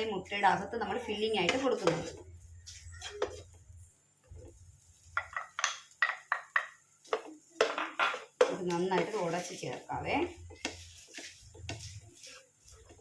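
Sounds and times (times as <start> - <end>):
utensil scraping a pan: 0.9 - 3.6, 7.0 - 13.0.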